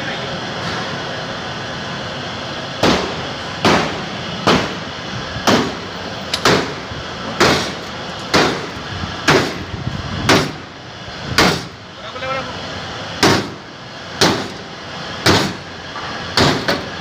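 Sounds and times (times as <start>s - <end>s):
workshop hum: 0.0s - 17.0s
hammer striking sheet metal: 2.8s - 4.8s, 5.4s - 5.8s, 6.4s - 6.8s, 7.4s - 8.7s, 9.3s - 9.6s, 10.3s - 10.6s, 11.4s - 11.7s, 13.2s - 13.6s, 14.2s - 14.6s, 15.2s - 15.6s, 16.4s - 16.9s.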